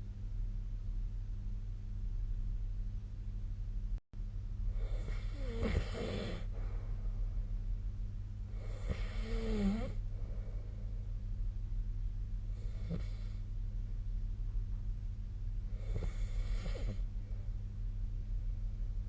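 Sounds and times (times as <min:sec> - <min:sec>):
steady low hum: 0:00.0 - 0:19.0
person snoring: 0:04.8 - 0:06.5, 0:08.5 - 0:10.0, 0:12.6 - 0:13.4, 0:15.7 - 0:17.1.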